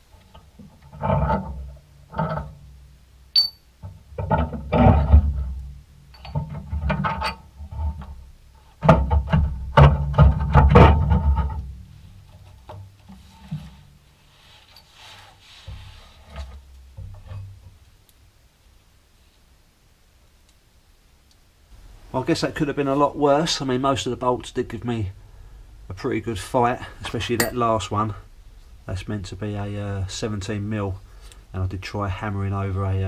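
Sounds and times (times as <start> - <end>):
faint knocks and scraping: 0.0 - 3.0, 3.8 - 18.0
metallic clicking and clanking: 6.1 - 8.2.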